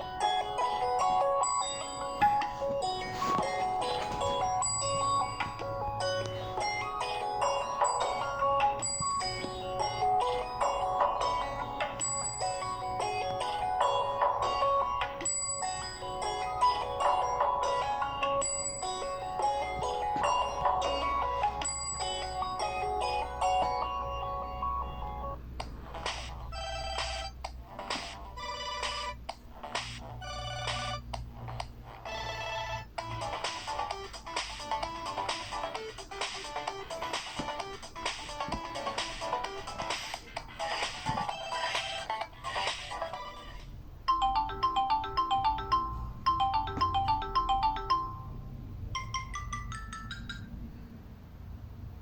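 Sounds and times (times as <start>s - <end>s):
melodic phone ringtone: 0.0s - 25.4s, 32.1s - 50.6s
ringtone of short repeated notes: 0.0s - 25.4s, 44.1s - 48.4s, 49.0s - 50.6s.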